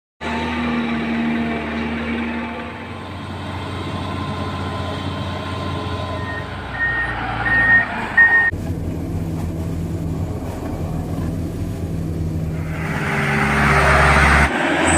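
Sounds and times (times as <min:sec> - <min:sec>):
excavator diesel engine running: 0:00.2 - 0:14.9
high warning alarm beeps: 0:06.2 - 0:08.5.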